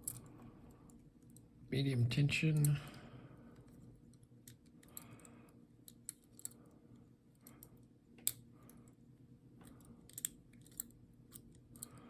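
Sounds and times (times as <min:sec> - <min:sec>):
pick wire clicking in padlock: 0:07.5 - 0:08.4, 0:09.7 - 0:12.0.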